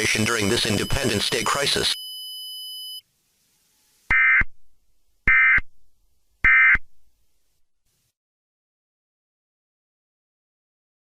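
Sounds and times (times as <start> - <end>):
buzzy digital data bursts: 0.0 - 1.9.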